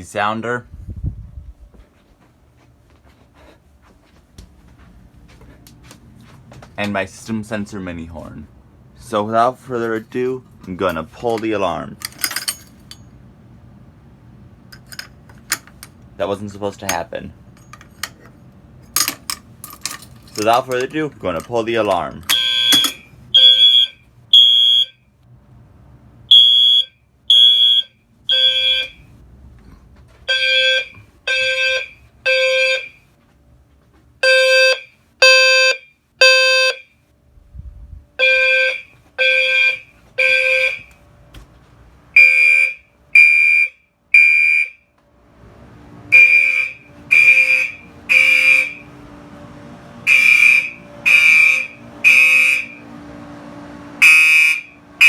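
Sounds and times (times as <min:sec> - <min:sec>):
low steady hum: 0:00.0 - 0:55.0
fire alarm horn blasts: 0:22.3 - 0:25.1, 0:26.3 - 0:29.2, 0:30.3 - 0:33.1, 0:34.2 - 0:37.0, 0:38.2 - 0:41.0, 0:42.1 - 0:44.9, 0:46.1 - 0:55.0.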